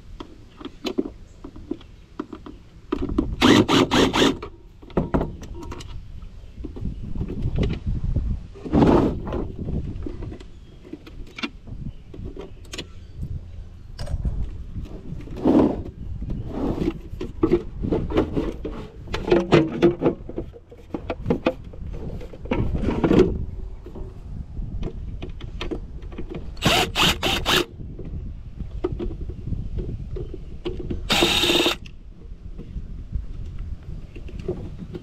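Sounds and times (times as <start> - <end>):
power drill-driver running: 3.4 - 4.4, 26.6 - 27.7, 31.1 - 31.9.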